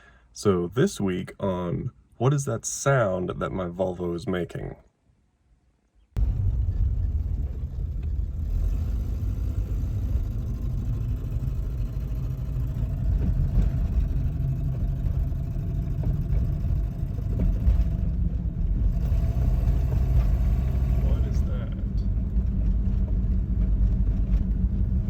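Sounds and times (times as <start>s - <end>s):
car engine rumbling: 6.2s - 25.0s.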